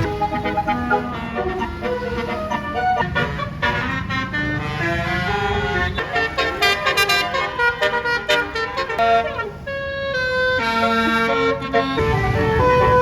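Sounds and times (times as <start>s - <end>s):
multi-tone air horn playing a tune: 0.0s - 13.0s.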